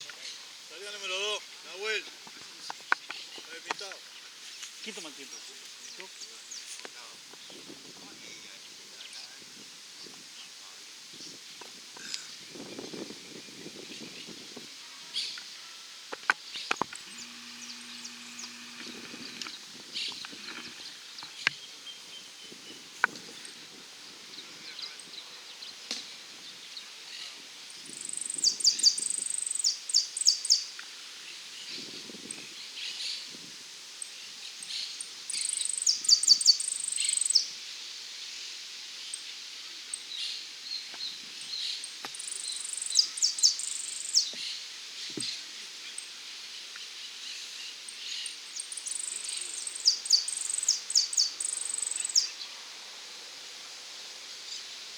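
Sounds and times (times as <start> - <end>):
outdoor background noise: 0.0 - 54.9
insect buzzing and clicking: 16.1 - 21.6.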